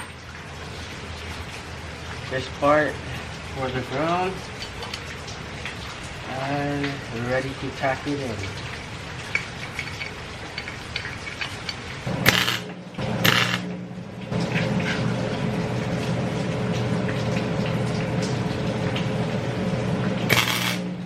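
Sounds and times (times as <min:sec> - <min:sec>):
arc welder buzzing: 0:12.1 - 0:13.8, 0:20.3 - 0:21.0
arc welder crackling bursts: 0:12.2 - 0:13.7, 0:20.3 - 0:21.0.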